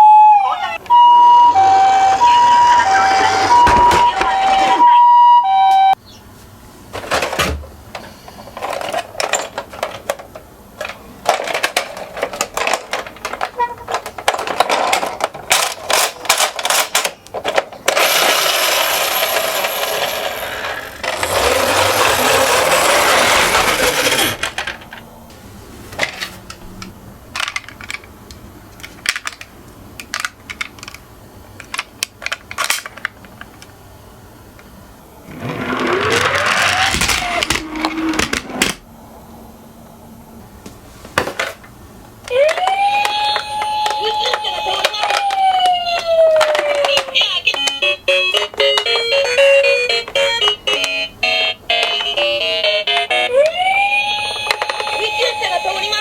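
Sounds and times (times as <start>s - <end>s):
toy cars rolling: 0.9s - 4.9s, 8.0s - 25.0s, 27.3s - 28.1s, 28.8s - 31.0s, 31.6s - 33.7s, 35.3s - 38.8s, 41.2s - 56.0s
toy cars clattering on track: 8.0s - 25.0s, 27.4s - 28.1s, 31.6s - 33.7s, 35.3s - 38.8s, 42.3s - 49.4s, 54.2s - 56.0s.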